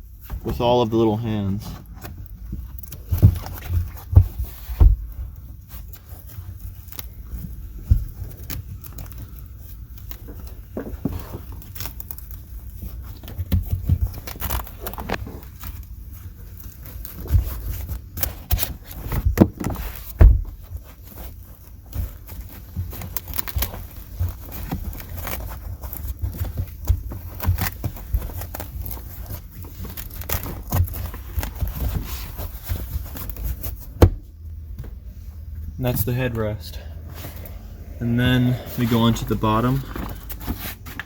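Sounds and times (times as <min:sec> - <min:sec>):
fabric rustling and tugging: 0:00.0 - 0:41.0
dull bumps and knocks: 0:01.8 - 0:05.4, 0:17.2 - 0:29.3, 0:29.9 - 0:36.2.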